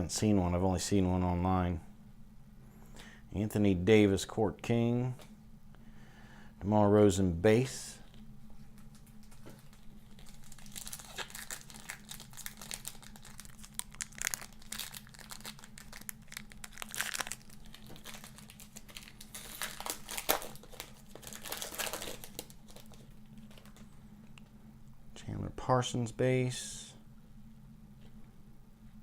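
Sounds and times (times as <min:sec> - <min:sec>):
foil wrapper crinkling: 0:08.6 - 0:23.9.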